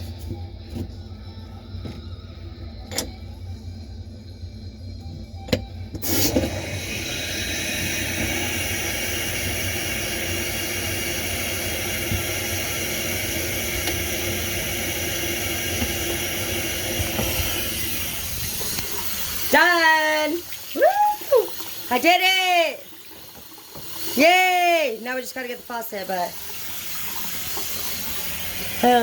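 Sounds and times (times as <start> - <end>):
tap water running into sink: 6.0 - 29.0.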